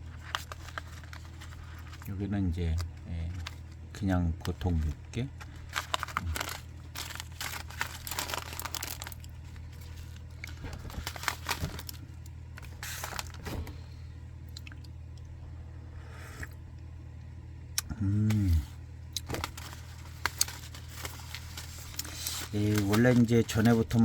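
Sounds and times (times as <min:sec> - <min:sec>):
plastic packets crinkling: 0:00.0 - 0:03.8, 0:04.4 - 0:13.8, 0:19.2 - 0:24.0
steady low hum: 0:00.0 - 0:24.0.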